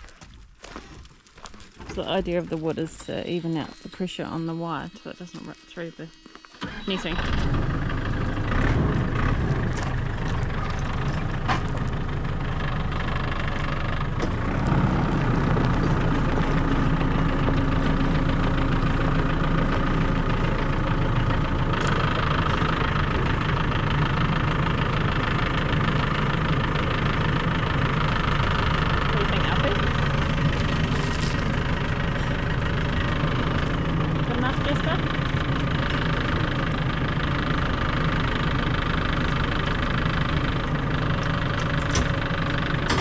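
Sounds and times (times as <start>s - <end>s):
engine running steadily: 1.4s - 43.0s.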